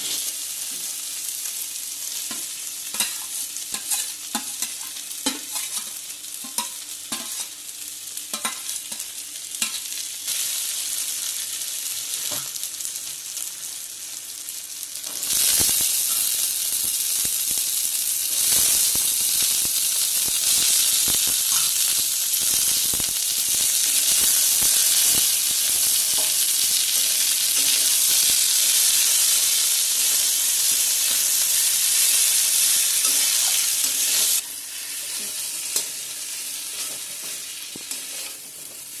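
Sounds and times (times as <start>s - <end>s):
food frying in oil: 0.0s - 39.0s
spatula scraping a pan: 3.0s - 7.6s, 36.6s - 38.9s.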